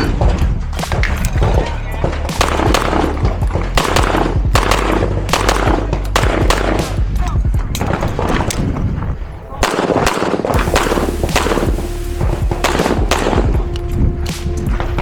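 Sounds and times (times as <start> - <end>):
background music with bass: 0.0 - 8.9, 10.6 - 15.0
pistol shots: 3.8 - 6.9, 9.6 - 13.6.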